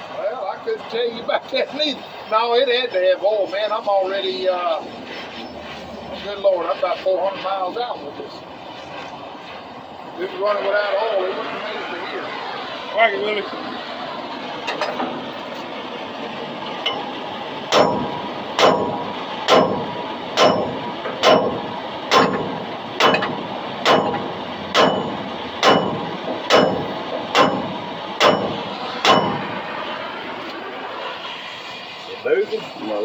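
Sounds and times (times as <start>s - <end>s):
hammer striking steel: 16.8s - 29.7s.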